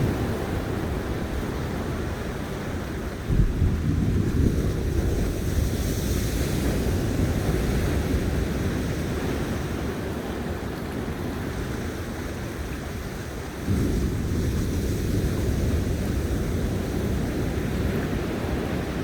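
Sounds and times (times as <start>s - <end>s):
wind buffeting microphone: 0.0s - 10.1s
sea surf washing on beach: 0.0s - 19.0s.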